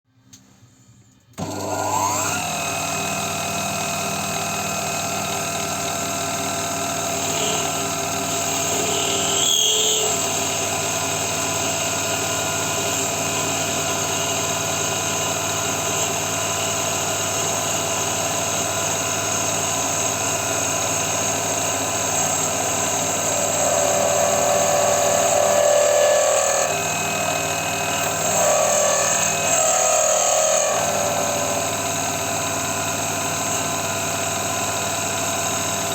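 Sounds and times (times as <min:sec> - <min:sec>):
metal lathe motor humming: 0:01.4 - 0:35.9
rough mid-pitched machine sound: 0:21.8 - 0:33.5.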